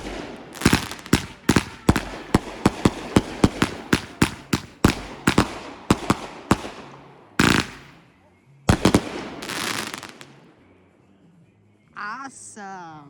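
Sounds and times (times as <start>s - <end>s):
firework bangs: 0.0s - 8.1s, 8.7s - 10.5s.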